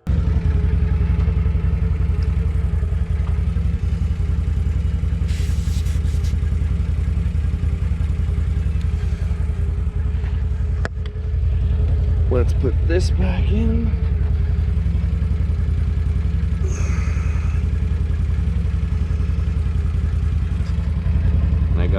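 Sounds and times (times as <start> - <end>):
portable compressor chugging: 0.0 - 21.9
air hiss: 5.2 - 6.4.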